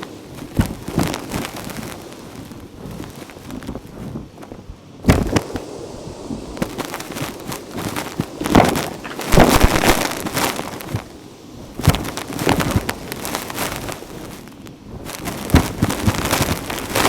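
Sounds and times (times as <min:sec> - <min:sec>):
debris crackling in vacuum: 0:05.1 - 0:11.2, 0:15.2 - 0:17.0
vacuum cleaner sucking: 0:05.4 - 0:10.8, 0:16.7 - 0:17.0.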